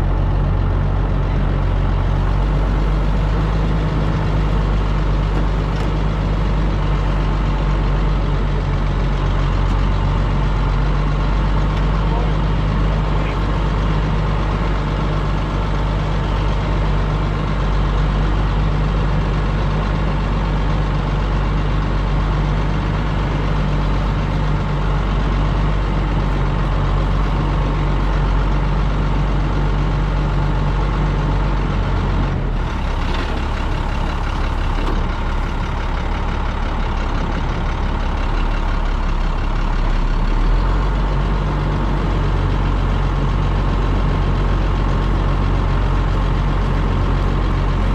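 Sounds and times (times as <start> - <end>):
heavy farm engine idling: 0.0 - 47.9.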